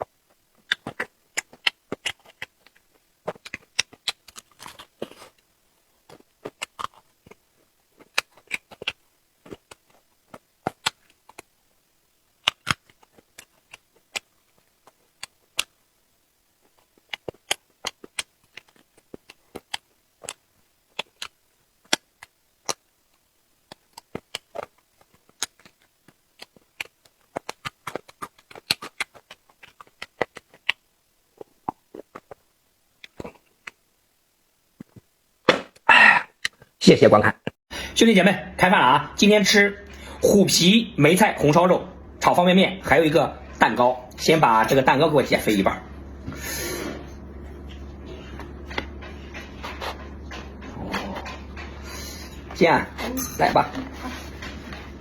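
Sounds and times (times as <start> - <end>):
person chewing: 0.0 - 11.6, 12.3 - 15.9, 16.6 - 33.8, 46.1 - 55.0.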